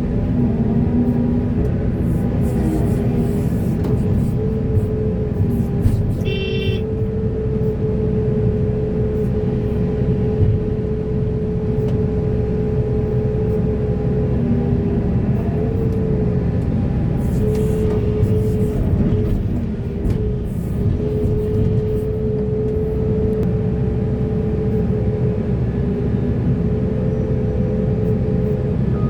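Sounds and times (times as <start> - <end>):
diesel machinery rumbling: 0.0 - 29.0.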